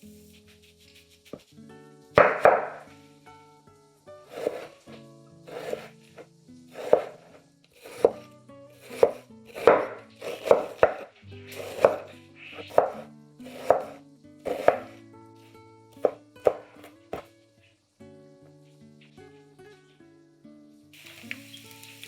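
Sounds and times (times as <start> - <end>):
soft background music: 0.0 - 22.0
knife chopping on cutting board: 2.2 - 2.9, 4.3 - 4.7, 5.5 - 5.9, 6.7 - 15.0, 16.0 - 17.3.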